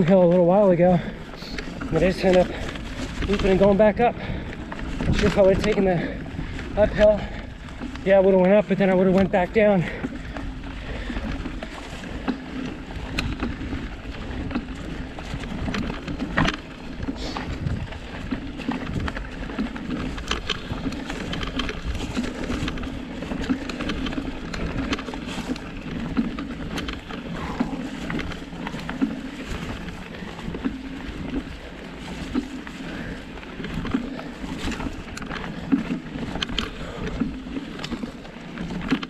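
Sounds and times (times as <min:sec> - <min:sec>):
bike tyres rolling rumble: 0:00.0 - 0:39.0
wheels knocking and rattling: 0:00.0 - 0:39.0.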